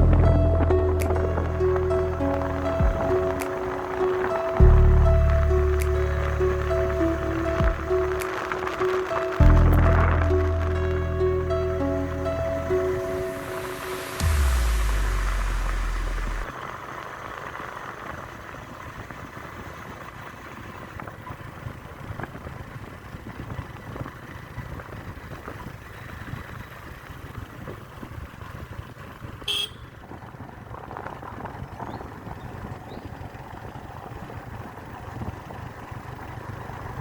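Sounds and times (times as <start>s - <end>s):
road noise: 0.0s - 37.0s
vehicle engine rumble: 0.0s - 37.0s
short horn toot: 29.5s - 29.9s.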